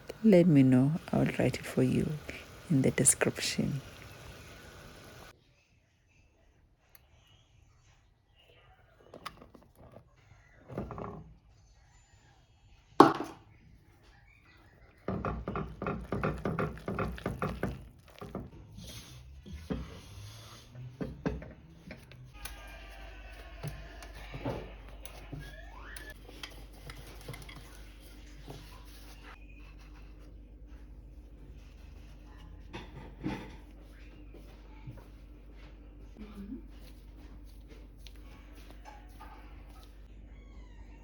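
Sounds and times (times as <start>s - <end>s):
faint steady hum: 0.0s - 5.3s.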